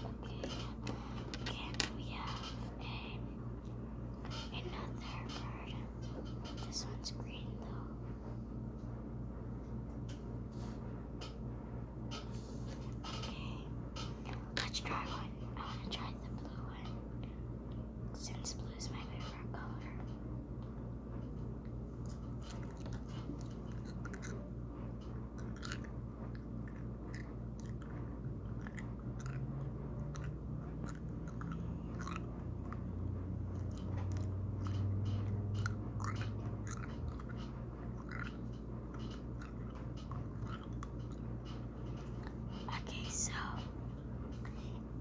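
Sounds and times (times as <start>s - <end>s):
steady low hum: 0.0s - 45.0s
person chewing crunchy snack: 25.3s - 32.4s, 35.6s - 37.4s, 38.0s - 38.5s, 40.3s - 41.2s.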